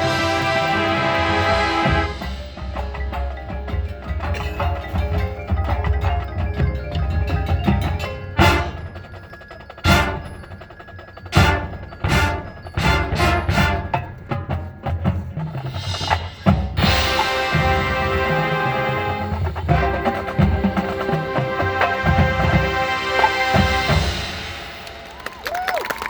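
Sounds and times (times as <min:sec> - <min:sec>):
marching band chord: 0:00.0 - 0:02.6, 0:08.4 - 0:09.1, 0:09.8 - 0:10.6, 0:11.3 - 0:14.2, 0:15.8 - 0:25.1
mallet percussion: 0:00.0 - 0:25.7
drums: 0:00.0 - 0:26.0.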